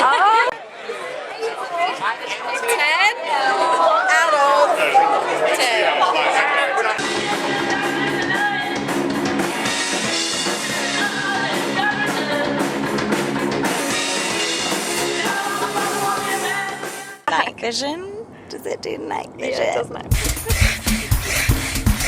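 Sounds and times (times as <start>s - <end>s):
rock music with singing: 7.0s - 17.2s.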